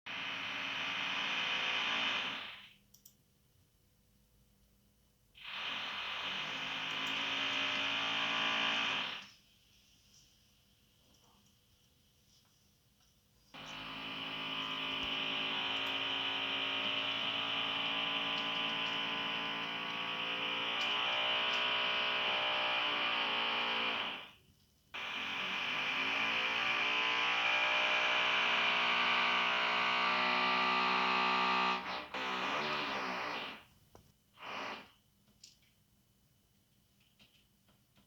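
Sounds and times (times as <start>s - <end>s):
electric drill boring into wall: 0.1s - 2.7s, 5.4s - 9.3s, 13.6s - 24.4s, 25.0s - 33.7s, 34.4s - 35.0s.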